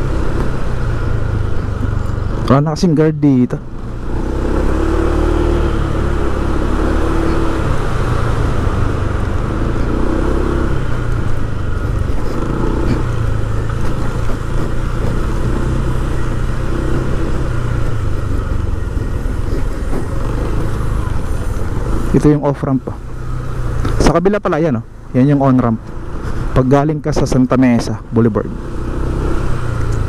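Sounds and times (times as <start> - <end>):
road noise: 0.0 - 30.0
vehicle engine running: 0.0 - 30.0.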